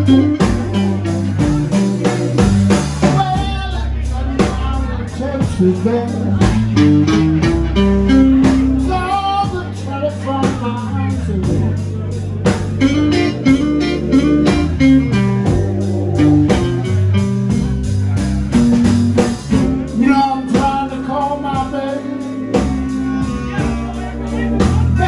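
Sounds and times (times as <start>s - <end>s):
bass and drums: 0.0s - 25.0s
electric guitar lead fills: 11.8s - 25.0s.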